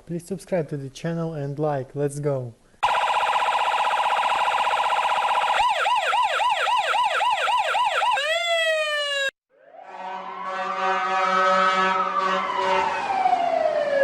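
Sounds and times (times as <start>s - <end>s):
electronic emergency siren: 2.8s - 14.0s.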